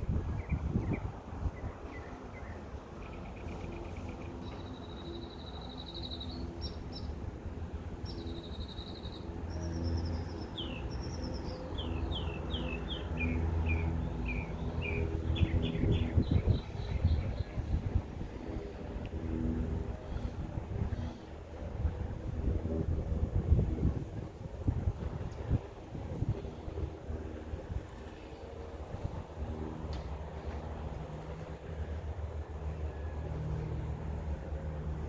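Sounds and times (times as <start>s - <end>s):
songbirds chirping and trilling: 0.0s - 18.0s
low steady rumble: 0.0s - 35.0s.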